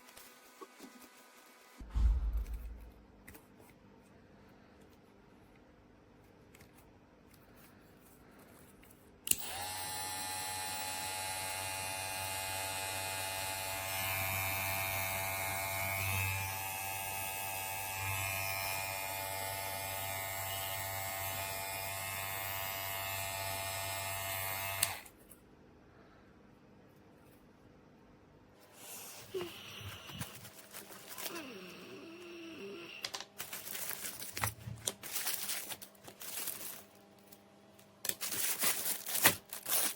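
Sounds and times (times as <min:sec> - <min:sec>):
hair clipper buzzing: 0:09.3 - 0:25.1.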